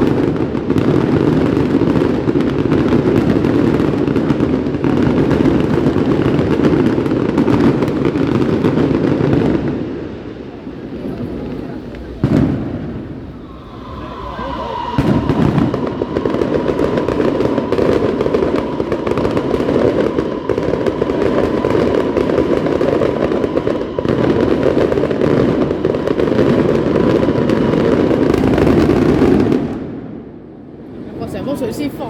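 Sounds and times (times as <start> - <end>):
fireworks crackling pops: 0.0 - 13.4, 15.0 - 29.9
thin steady whistle: 10.6 - 28.7.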